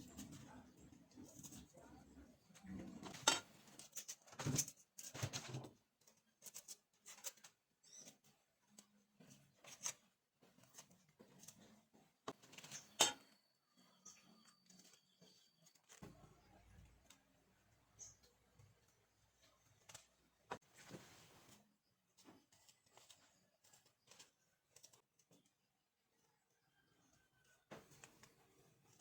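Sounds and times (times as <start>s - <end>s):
kitchen utensils clicking and knocking: 2.8s - 5.6s, 12.5s - 13.4s
cookware clattering: 3.0s - 3.5s, 12.8s - 13.3s.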